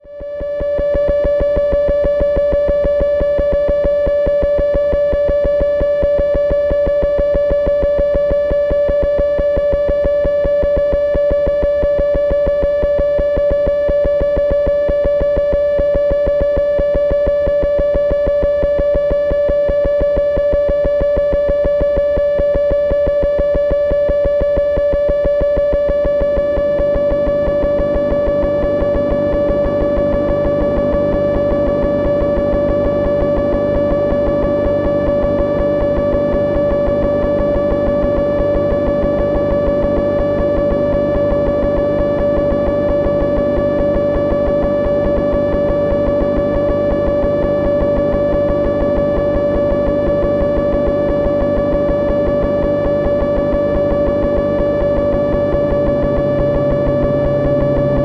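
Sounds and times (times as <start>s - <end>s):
synth drone with buzzing pulse: 0.0s - 58.0s.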